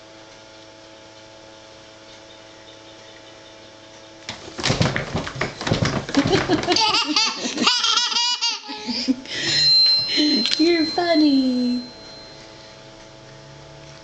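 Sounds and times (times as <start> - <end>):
baby laughing: 6.2 - 9.2.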